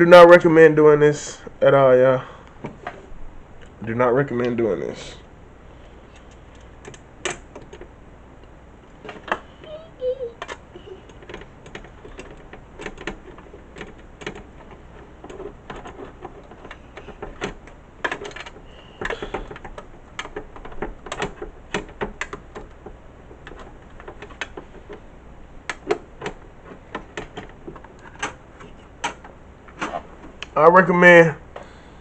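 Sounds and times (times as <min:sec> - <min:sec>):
clicks and knocks of computer parts: 0:06.1 - 0:07.9, 0:09.0 - 0:09.5, 0:10.4 - 0:30.6.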